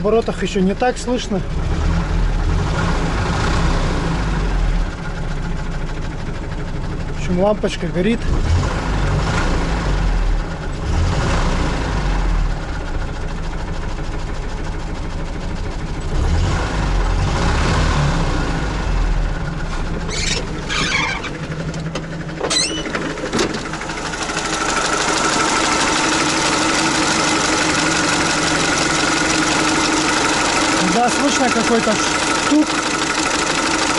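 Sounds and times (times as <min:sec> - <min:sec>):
car engine running with a knock: 0:12.5 - 0:16.3, 0:19.3 - 0:33.9.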